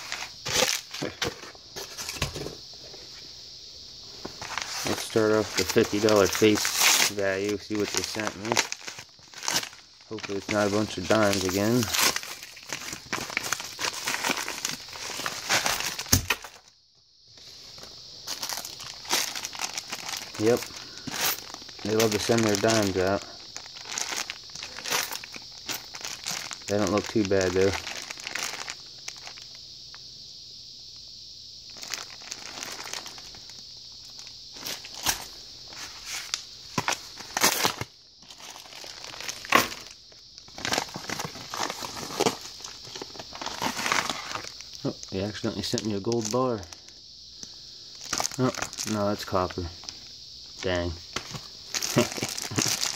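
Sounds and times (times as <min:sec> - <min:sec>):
plastic packaging crinkling: 0:04.3 - 0:16.7, 0:17.8 - 0:29.6, 0:31.7 - 0:45.0, 0:48.0 - 0:50.0, 0:50.6 - 0:52.9
sharp crackles: 0:51.7 - 0:52.9.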